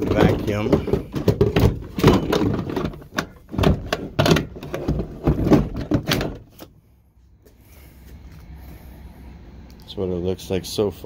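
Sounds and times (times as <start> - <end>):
plastic cases knocking and clacking: 0.0 - 6.7.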